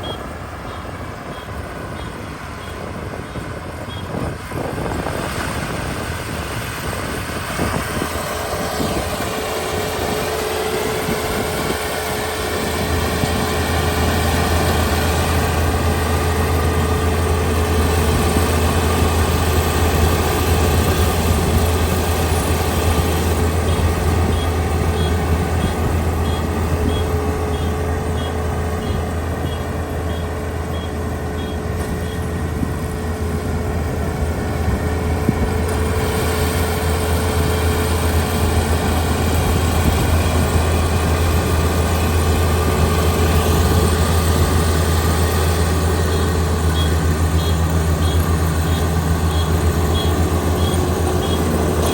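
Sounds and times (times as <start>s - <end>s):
faint high beeping: 0.0s - 4.1s
diesel engine droning: 0.0s - 51.9s.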